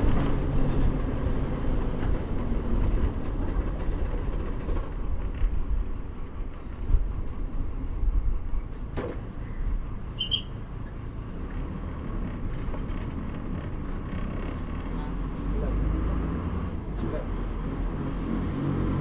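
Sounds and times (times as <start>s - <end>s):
bus engine and road rumble: 0.0s - 19.0s
brief high squeak: 10.1s - 10.6s.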